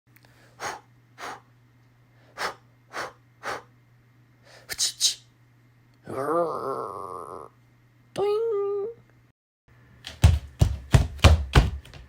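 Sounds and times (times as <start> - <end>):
short sharp breaths: 0.2 - 1.5, 2.2 - 3.7.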